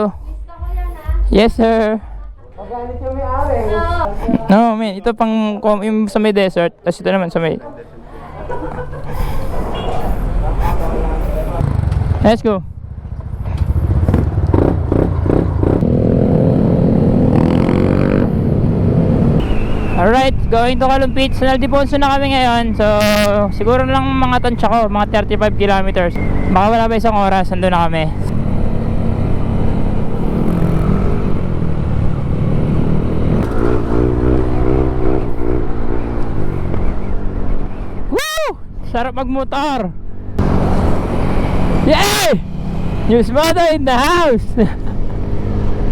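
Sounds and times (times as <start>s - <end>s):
motorcycle engine running: 11.6s - 19.4s
motorcycle engine pulling away: 11.6s - 19.9s, 28.3s - 37.9s.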